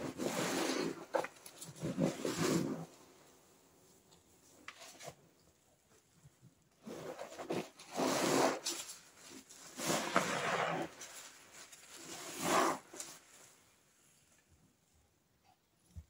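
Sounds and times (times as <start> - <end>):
rough rubbing noise: 0.0 - 3.0, 6.8 - 13.6.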